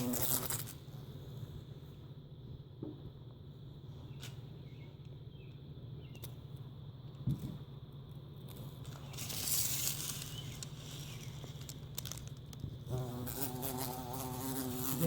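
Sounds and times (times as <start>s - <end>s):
bumblebee buzzing: 0.0s - 0.8s, 12.8s - 15.0s
rustling and crinkling handling: 8.5s - 12.8s.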